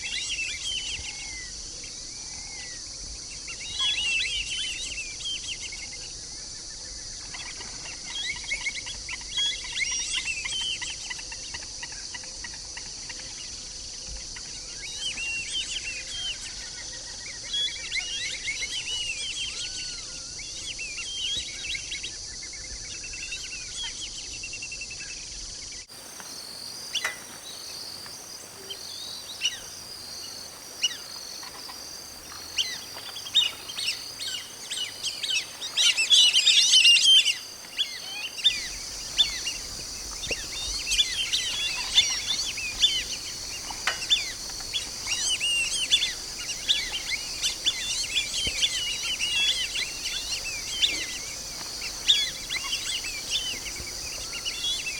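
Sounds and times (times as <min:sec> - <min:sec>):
ducks whistling calls: 0:25.9 - 0:54.9
steady high hiss: 0:25.9 - 0:54.9.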